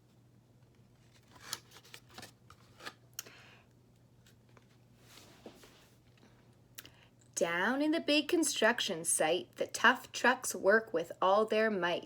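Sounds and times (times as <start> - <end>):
book pages turning: 0.7 - 3.0.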